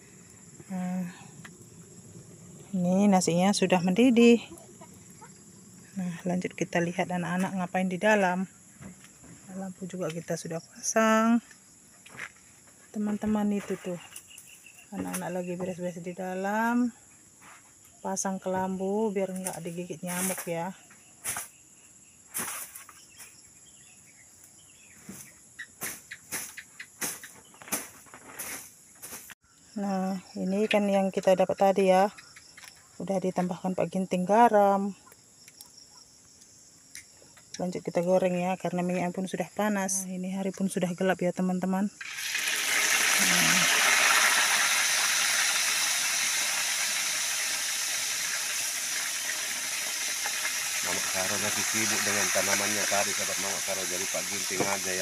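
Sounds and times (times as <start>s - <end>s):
crickets and insects chirping: 0.0s - 55.0s
fish sizzling in hot oil: 42.0s - 55.0s.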